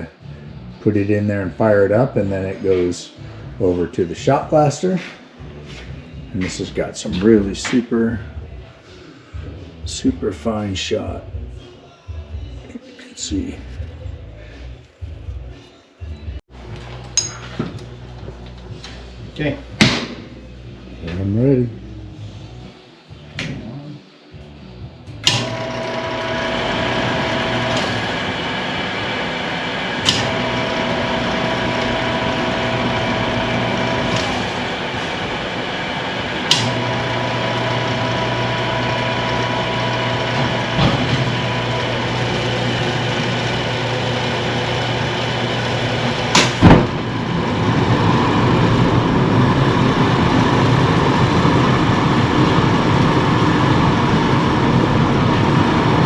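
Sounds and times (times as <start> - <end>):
oven machinery humming: 25.1 - 56.0.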